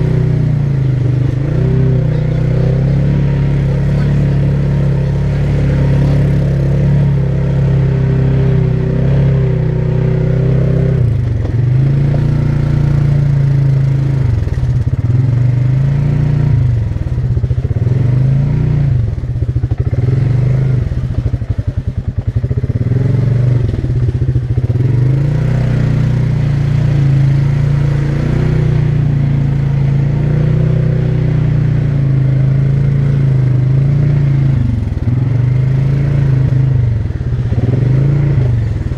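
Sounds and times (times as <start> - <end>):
atv engine running: 0.0 - 38.9.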